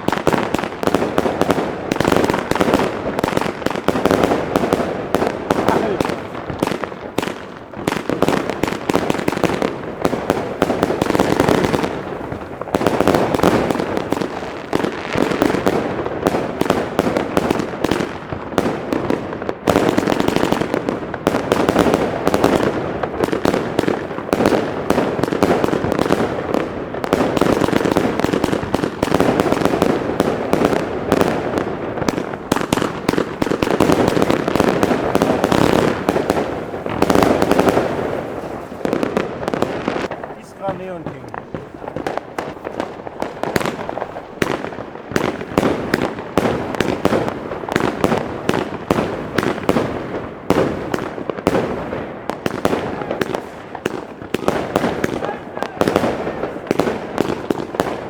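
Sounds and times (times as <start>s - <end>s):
firework pops and bangs: 0.0s - 58.0s.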